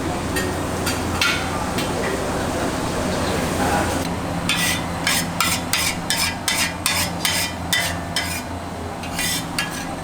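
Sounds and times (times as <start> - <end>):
metal spatula scraping a wok: 4.5 - 10.0.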